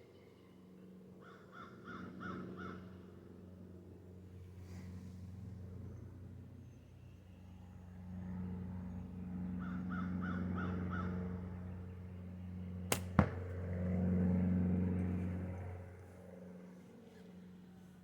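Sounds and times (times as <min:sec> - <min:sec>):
steady low hum: 0:02.8 - 0:18.0
gunshot cracks: 0:12.9 - 0:13.6.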